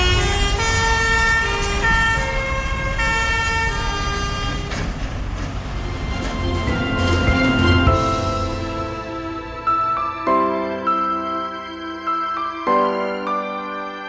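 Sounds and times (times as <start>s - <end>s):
melody of held notes: 5.6s - 14.0s.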